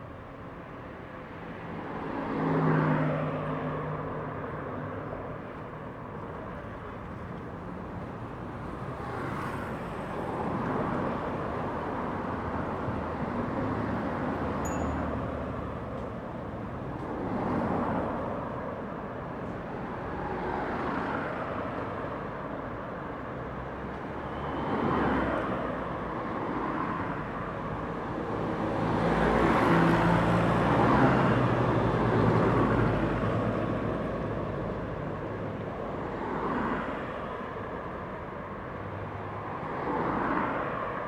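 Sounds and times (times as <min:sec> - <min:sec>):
cars passing: 0:23.1 - 0:41.0.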